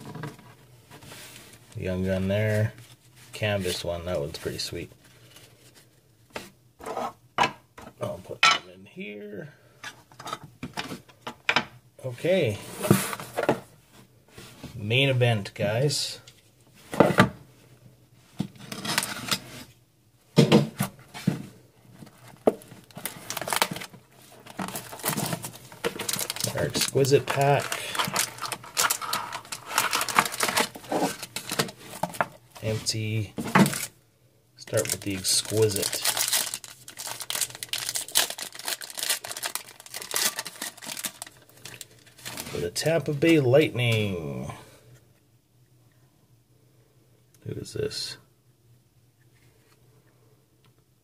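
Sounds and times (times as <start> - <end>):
wrapper rustling and crinkling: 22.1 - 33.9, 34.6 - 42.9.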